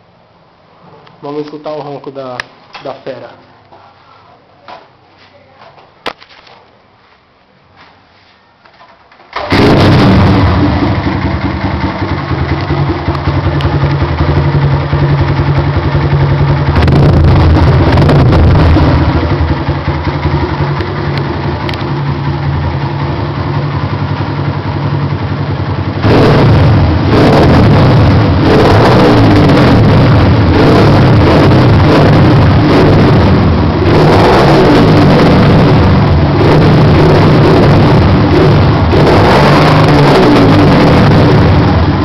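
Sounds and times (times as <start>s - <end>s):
motorcycle engine revving: 9.3s - 42.0s.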